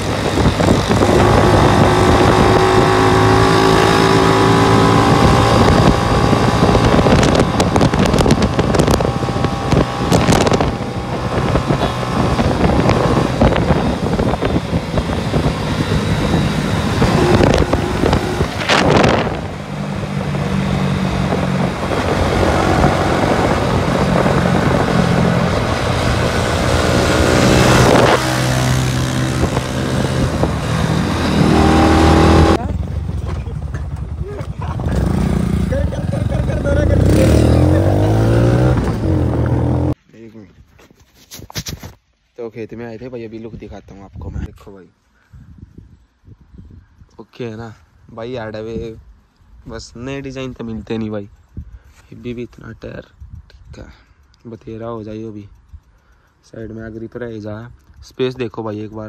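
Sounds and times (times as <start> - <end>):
wind on microphone: 0.0 - 33.2, 37.0 - 40.0, 45.3 - 47.2
motorcycle engine running: 0.0 - 40.0.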